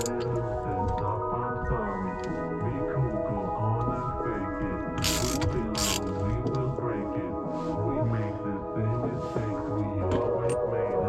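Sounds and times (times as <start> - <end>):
background music: 0.0 - 11.0
ratchet wrench clicking: 5.0 - 6.1.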